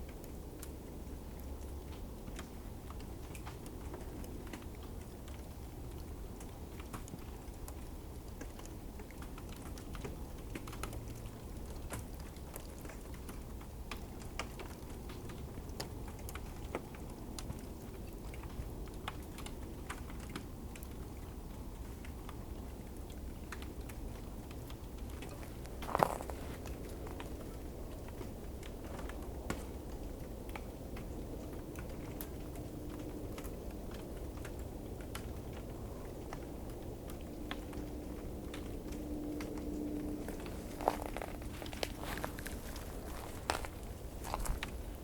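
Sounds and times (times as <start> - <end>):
ice crackling: 25.1 - 27.5, 40.2 - 45.0
low rumble: 38.1 - 45.0.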